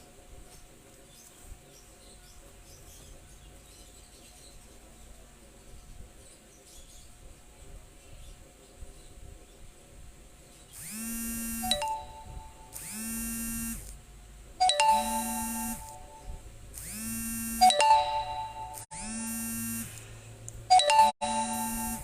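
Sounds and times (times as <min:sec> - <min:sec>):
mobile phone ringtone: 0:11.2 - 0:13.7, 0:14.6 - 0:16.4, 0:17.0 - 0:20.0, 0:20.7 - 0:22.0
chime-like ding notes: 0:11.6 - 0:12.8, 0:14.6 - 0:16.4, 0:17.6 - 0:18.8, 0:20.7 - 0:22.0.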